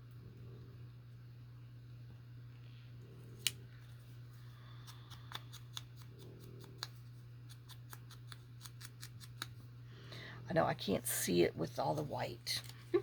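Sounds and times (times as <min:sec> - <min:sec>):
low steady hum: 0:00.0 - 0:13.0
scissors snipping paper: 0:04.8 - 0:09.6.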